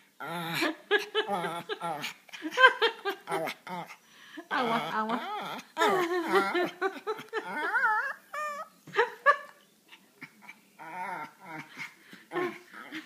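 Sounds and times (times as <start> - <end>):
dog whining and warbling: 7.4 - 8.7.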